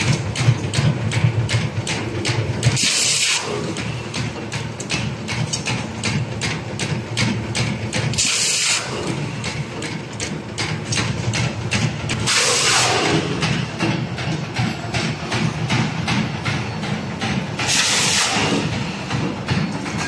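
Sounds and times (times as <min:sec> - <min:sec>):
machine rhythmic clacking: 0:00.0 - 0:20.0.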